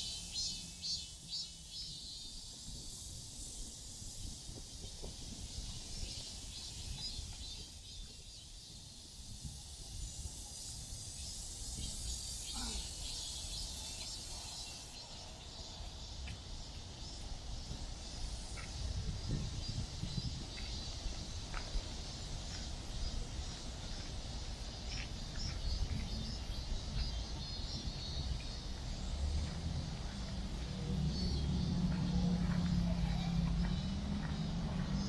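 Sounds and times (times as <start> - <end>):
insects chirring: 0.0 - 35.0
low wind rumble: 16.8 - 24.6
distant city noise: 20.6 - 35.0.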